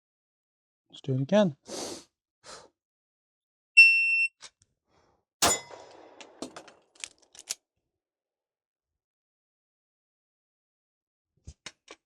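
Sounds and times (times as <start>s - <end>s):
shot timer beep: 3.8s - 4.3s
handgun shot: 5.4s - 6.8s.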